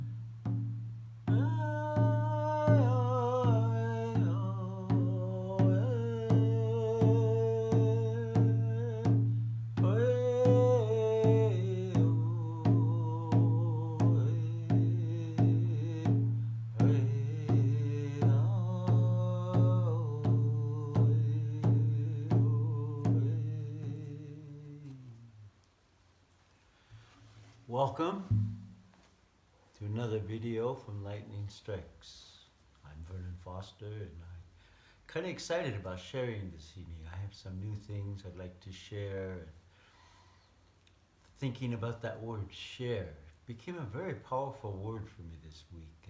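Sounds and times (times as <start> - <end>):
steady drum beat: 0.0 - 24.4, 28.2 - 28.8
person singing: 1.2 - 25.3.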